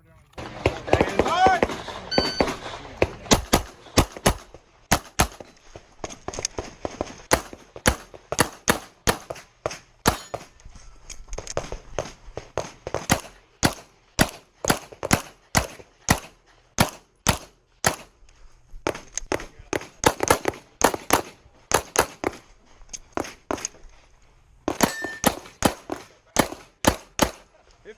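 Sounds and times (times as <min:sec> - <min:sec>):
pistol shots: 0:00.5 - 0:05.5, 0:07.3 - 0:10.5, 0:12.6 - 0:18.1, 0:18.9 - 0:22.4, 0:24.7 - 0:27.4.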